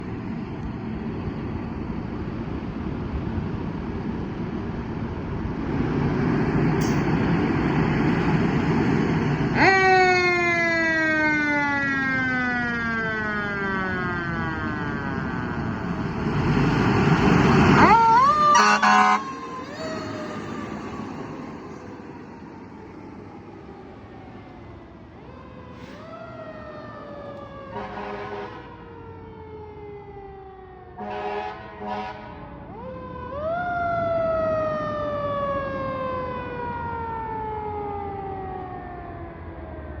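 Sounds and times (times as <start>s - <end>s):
engine and road noise: 0.0s - 40.0s
fire engine siren: 3.6s - 40.0s
air horn blast: 18.5s - 19.2s, 27.8s - 28.6s, 31.0s - 32.4s.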